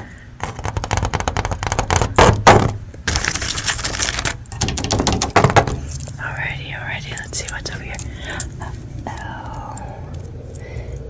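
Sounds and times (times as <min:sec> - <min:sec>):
fingernails tapping on hard object: 0:00.4 - 0:02.7.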